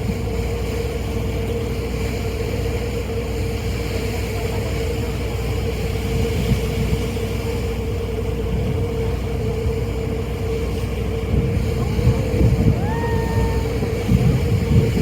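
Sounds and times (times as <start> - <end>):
ferry engines droning: 0.0 - 15.0
wind on the microphone: 8.3 - 15.0.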